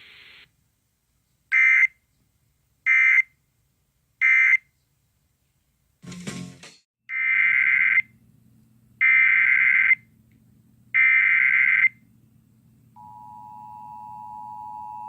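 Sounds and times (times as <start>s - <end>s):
faint low hum: 11.9s - 15.0s.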